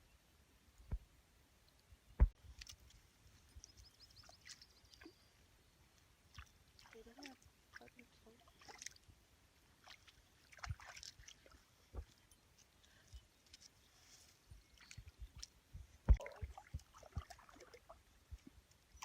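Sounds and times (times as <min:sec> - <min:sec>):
small water splashes: 0:02.2 - 0:13.8, 0:14.6 - 0:19.0
dog lapping water: 0:09.8 - 0:11.6, 0:16.1 - 0:17.9.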